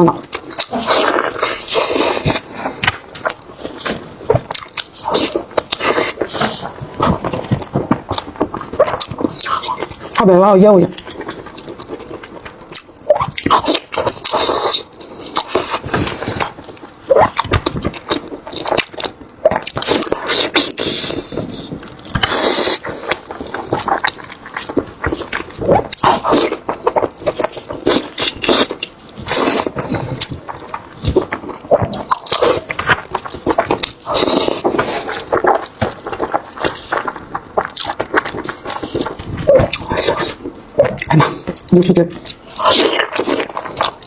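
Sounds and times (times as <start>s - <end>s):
wet chewing and lip-smacking: 0.0s - 44.0s.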